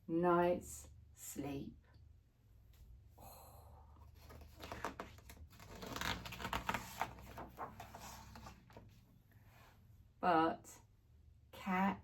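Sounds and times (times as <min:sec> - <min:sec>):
paper page rustling and turning: 0:04.2 - 0:09.0.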